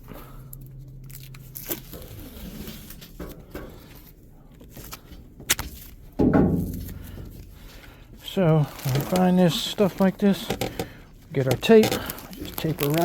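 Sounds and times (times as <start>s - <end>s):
plastic bag rustling: 0.8s - 13.0s
small knocks: 5.2s - 8.0s, 10.4s - 13.0s.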